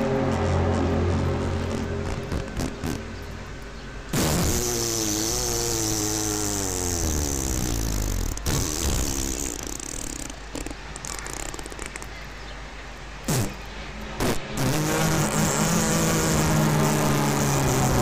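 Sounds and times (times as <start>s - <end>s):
low rumble: 0.0s - 4.1s
loud droning groan: 0.0s - 10.4s, 14.2s - 18.0s.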